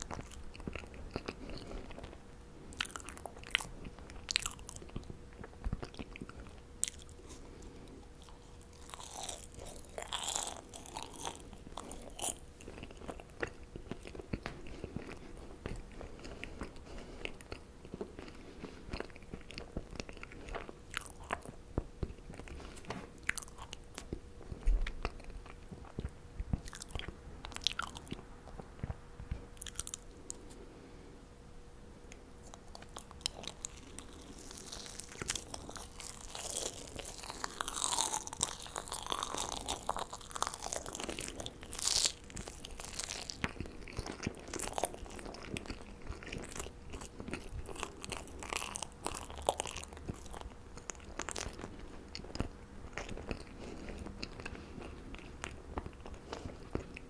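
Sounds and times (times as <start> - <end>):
person chewing marshmallows: 0.0 - 31.0, 32.1 - 57.0
faint steady hum: 0.0 - 57.0.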